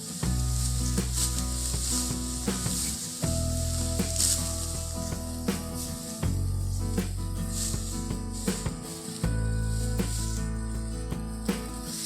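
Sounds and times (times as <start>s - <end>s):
high hissing rustling noise: 0.0s - 12.0s
music with a regular beat: 0.0s - 12.0s.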